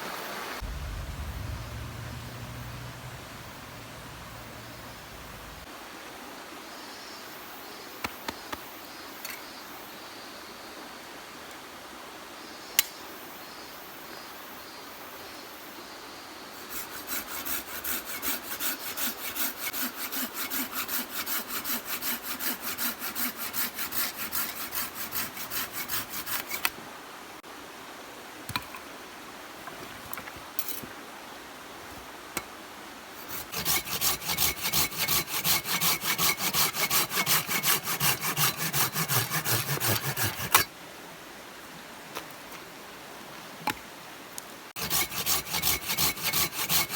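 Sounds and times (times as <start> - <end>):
hand saw cutting wood: 16.6 - 26.8, 33.2 - 40.7, 44.8 - 46.9.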